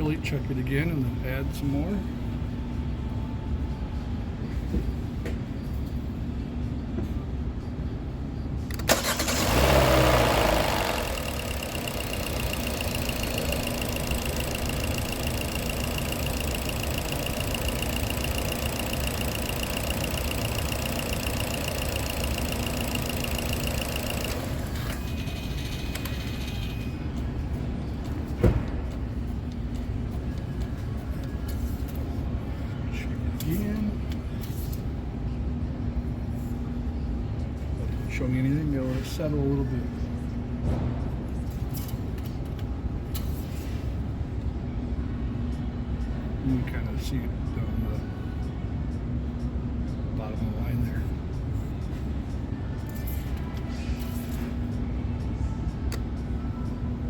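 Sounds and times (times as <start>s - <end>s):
car engine starting and idling: 8.7s - 26.8s.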